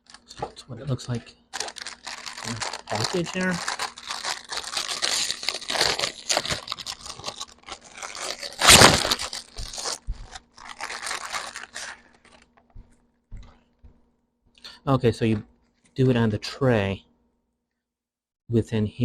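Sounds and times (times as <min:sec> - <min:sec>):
plastic wrapper crinkling: 0:00.0 - 0:00.5, 0:01.1 - 0:13.6
packaging ripping: 0:01.5 - 0:12.6.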